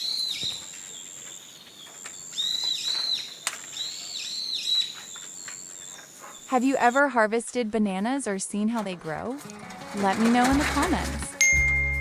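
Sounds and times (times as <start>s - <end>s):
bird whistling: 1.4s - 7.1s.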